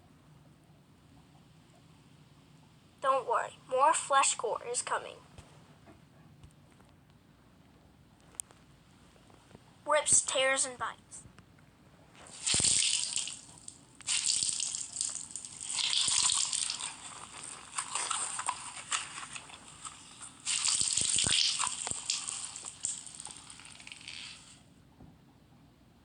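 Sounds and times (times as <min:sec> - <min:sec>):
wet flesh tearing: 0:12.3 - 0:24.5.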